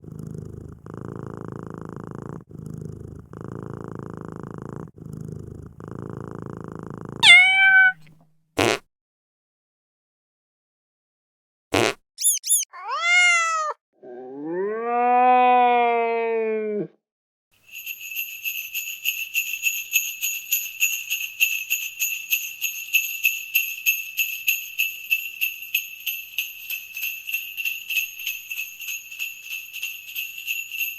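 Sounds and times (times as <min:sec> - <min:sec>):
cat purring: 0:00.0 - 0:08.0
cat meowing: 0:07.2 - 0:08.1, 0:12.2 - 0:13.8
jingle bell shaken rapidly: 0:17.7 - 0:30.9.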